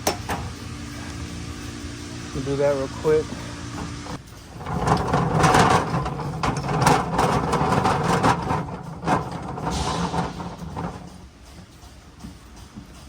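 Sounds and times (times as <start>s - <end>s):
tools knocking and clattering: 0.0s - 0.6s, 3.7s - 13.0s
steady low hum: 0.0s - 13.0s.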